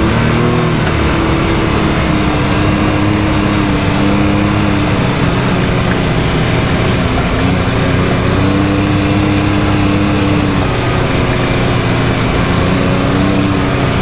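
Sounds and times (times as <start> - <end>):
vehicle engine drone: 0.0 - 14.0.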